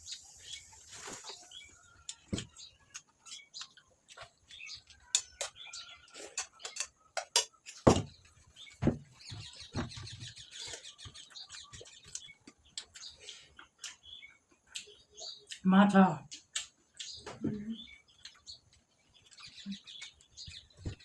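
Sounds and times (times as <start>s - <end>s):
wet chewing and lip smacking: 2.8s - 7.8s, 10.5s - 15.6s, 16.3s - 20.7s.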